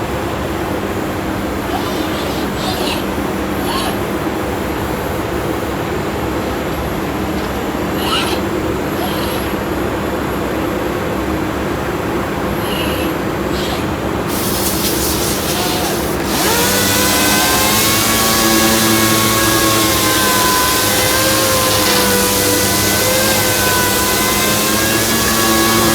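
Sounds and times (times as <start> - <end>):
hiss: 1.6 - 5.6, 12.7 - 25.9
sanding machine humming: 14.2 - 25.9
motor whine speeding up: 14.3 - 25.9.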